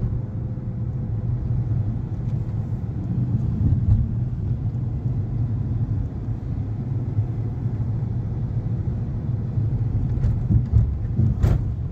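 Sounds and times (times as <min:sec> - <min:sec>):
vehicle rumbling on the move: 0:00.0 - 0:11.9.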